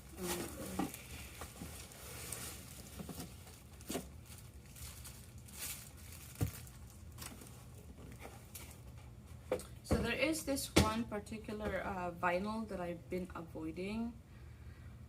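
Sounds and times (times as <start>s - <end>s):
fabric rustling and crinkling: 0.0s - 8.9s.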